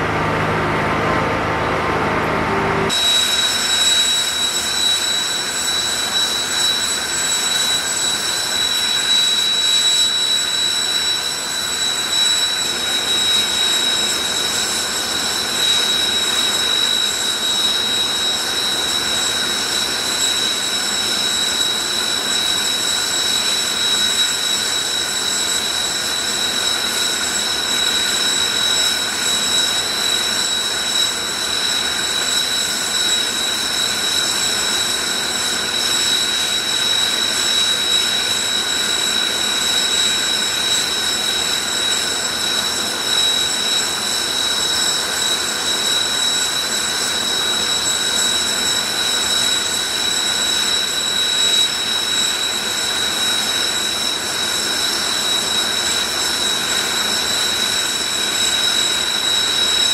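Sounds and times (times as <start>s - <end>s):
jet engines whining: 0.0s - 59.9s.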